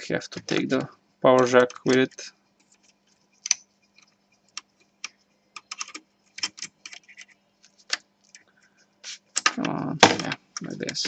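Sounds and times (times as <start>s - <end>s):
laptop parts clicking: 1.4s - 8.4s.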